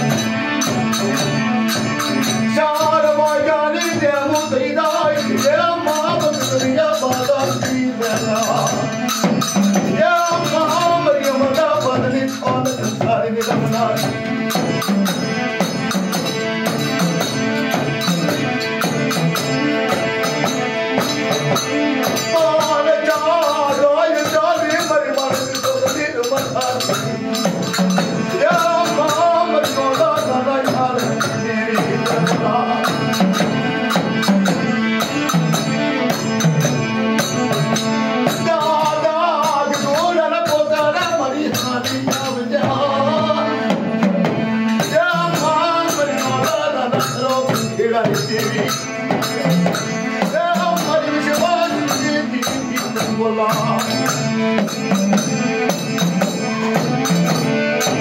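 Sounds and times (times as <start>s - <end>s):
music with fast high percussion: 0.0s - 58.0s.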